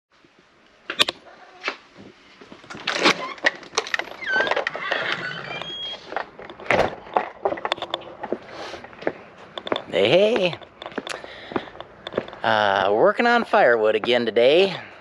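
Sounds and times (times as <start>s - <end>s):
short squeaks: 3.0s - 6.1s.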